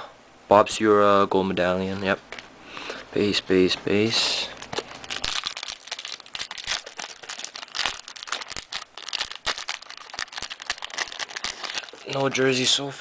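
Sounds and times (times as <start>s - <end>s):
cards and foil wrappers crinkling: 3.2s - 12.9s.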